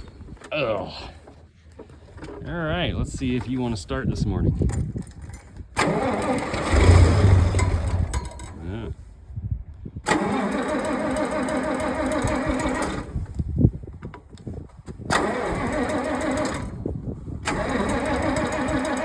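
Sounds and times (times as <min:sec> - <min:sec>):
tractor engine cranking: 0:04.7 - 0:08.8, 0:10.0 - 0:13.5, 0:15.1 - 0:19.0.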